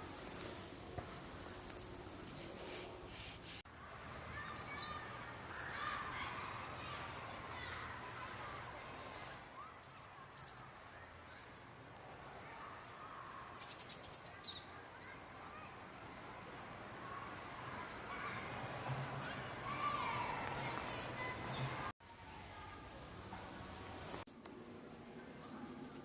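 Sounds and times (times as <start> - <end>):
high thin bird calls: 12.7 - 14.8.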